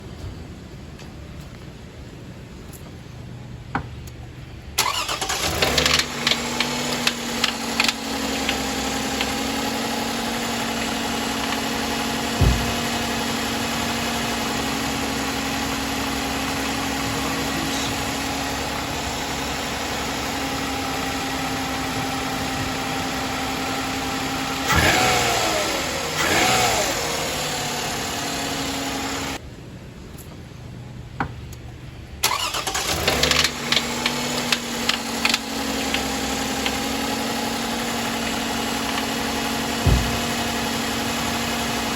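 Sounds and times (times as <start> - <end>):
car engine starting and idling: 3.9 - 29.5, 31.8 - 41.9
engine knocking and rattling: 4.8 - 29.4, 32.3 - 41.9
engine revving: 4.8 - 29.4, 32.3 - 41.9.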